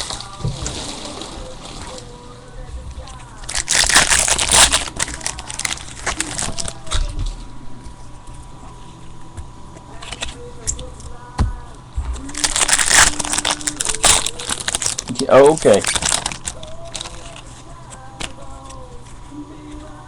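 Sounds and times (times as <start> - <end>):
foil wrappers tearing and crinkling: 3.4 - 7.4, 12.2 - 18.9
cards rustling and clicking: 3.5 - 7.2, 12.2 - 19.9.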